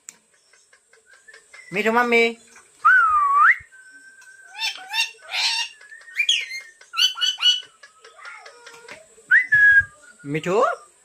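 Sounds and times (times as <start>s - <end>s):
parrot squawks and chirps: 4.5s - 8.8s.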